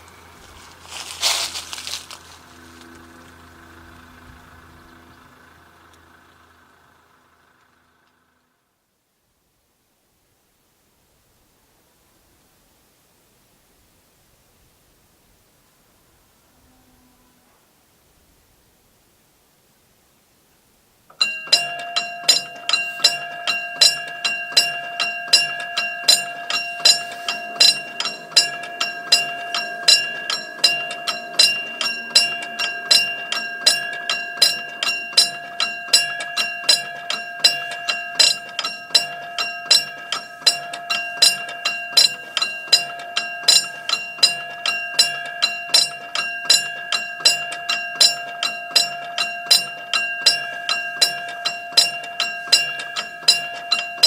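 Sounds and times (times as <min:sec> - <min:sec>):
level crossing warning bell: 0:00.0 - 0:07.5, 0:21.1 - 0:54.0.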